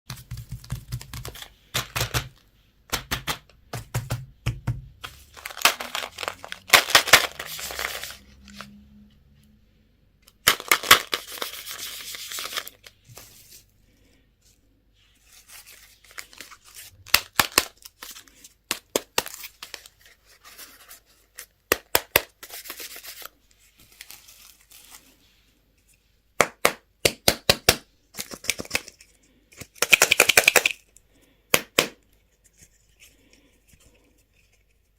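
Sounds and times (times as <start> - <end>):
candy wrappers crinkling: 5.1 - 8.7, 10.4 - 13.0, 15.4 - 20.8, 28.1 - 31.0
packaging clicks and snaps: 5.4 - 8.1, 27.2 - 30.8.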